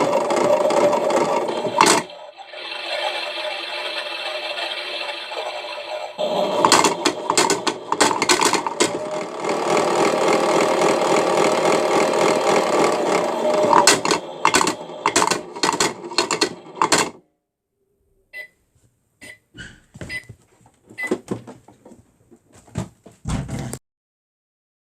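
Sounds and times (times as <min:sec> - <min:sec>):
rattle and clatter: 0:00.0 - 0:02.2, 0:06.6 - 0:17.2
toy washing machine motor humming: 0:00.0 - 0:17.2.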